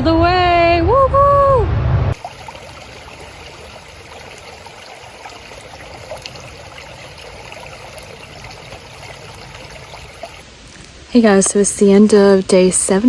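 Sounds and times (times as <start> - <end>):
creek water rushing: 2.2 - 10.4.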